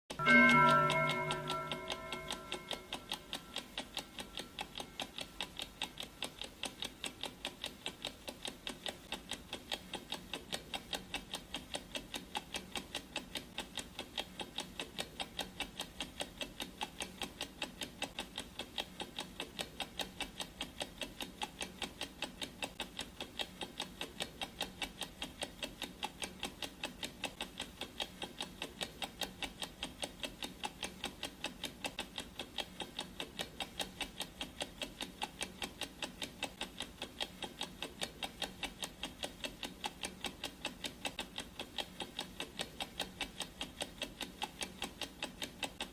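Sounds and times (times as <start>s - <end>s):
clock ticking: 0.1s - 45.9s
gong ringing: 0.2s - 3.4s.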